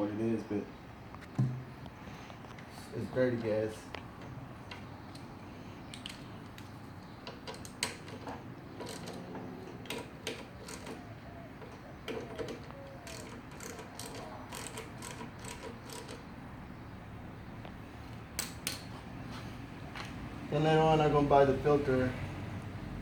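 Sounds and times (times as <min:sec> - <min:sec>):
small metal parts clicking: 0:05.9 - 0:11.0, 0:11.6 - 0:16.3.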